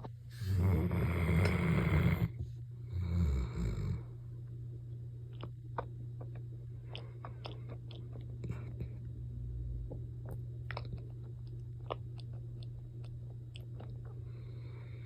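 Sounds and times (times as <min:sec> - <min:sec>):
dog snoring: 0:00.4 - 0:04.2.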